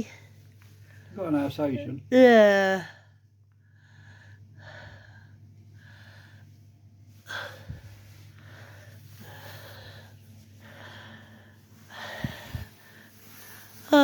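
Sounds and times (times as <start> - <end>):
steady low hum: 0.0 - 14.0
person breathing close: 3.7 - 14.0.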